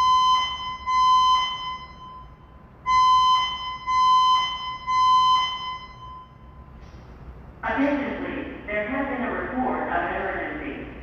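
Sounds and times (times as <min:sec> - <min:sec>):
evacuation alarm beeping: 0:00.0 - 0:07.6.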